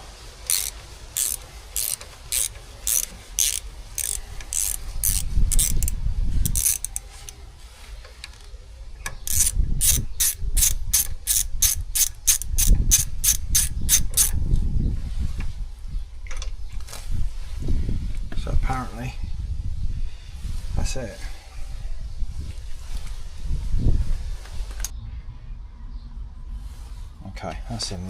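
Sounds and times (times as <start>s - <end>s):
ratchet wrench clicking: 0.5s - 7.1s, 9.2s - 14.4s.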